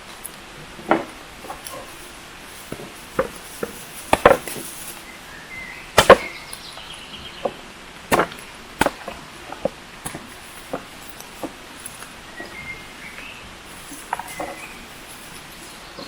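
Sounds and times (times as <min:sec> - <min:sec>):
chopping knocks: 0:06.0 - 0:06.5, 0:07.4 - 0:11.6.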